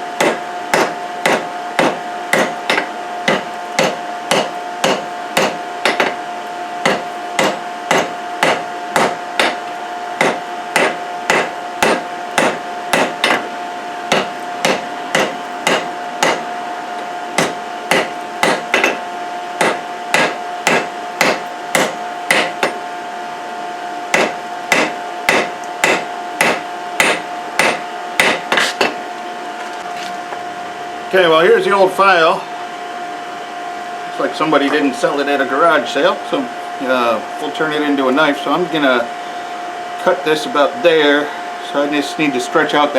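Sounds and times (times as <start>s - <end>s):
steady hum: 0.0s - 42.9s
hammer on hot steel on anvil: 0.2s - 6.2s, 6.8s - 13.5s, 14.1s - 16.5s, 17.4s - 19.0s, 19.6s - 22.8s, 24.1s - 29.0s.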